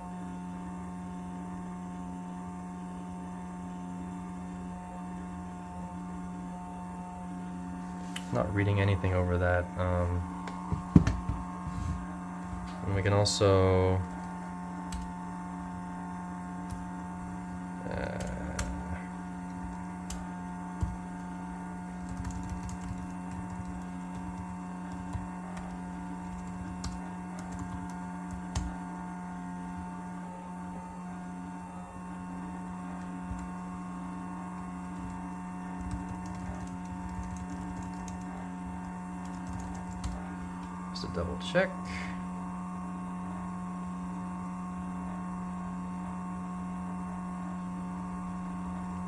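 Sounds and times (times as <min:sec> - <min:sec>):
electrical hum with whine: 0:00.0 - 0:49.0
keyboard typing: 0:14.0 - 0:15.1, 0:17.8 - 0:28.8, 0:33.0 - 0:33.8, 0:34.6 - 0:40.7.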